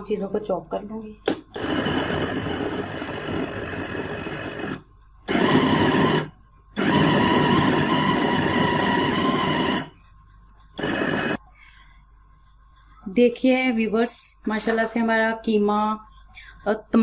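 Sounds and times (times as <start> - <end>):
electric food chopper running in pulses: 1.5 - 10.0, 10.8 - 11.4.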